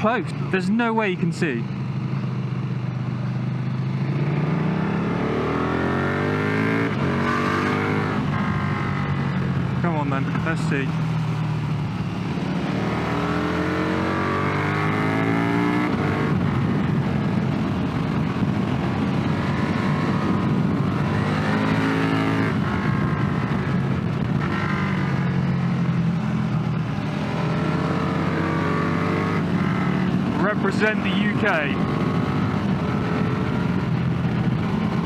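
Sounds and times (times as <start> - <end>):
motorcycle engine accelerating: 0.0 - 35.0
wind rush: 15.9 - 21.7.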